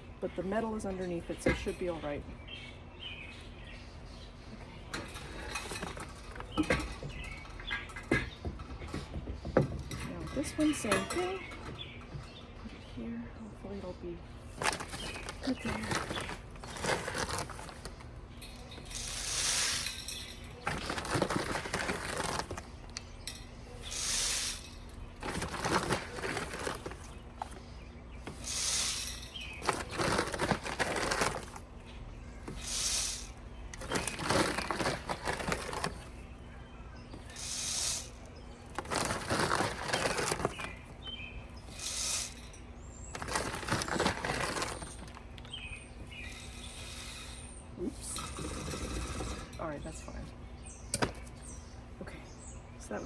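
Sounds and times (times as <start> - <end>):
birdseed pouring into feeder: 14.6 - 18.0, 18.7 - 22.7, 23.9 - 27.6, 28.3 - 31.6, 32.5 - 36.2, 37.3 - 40.8, 43.1 - 45.3.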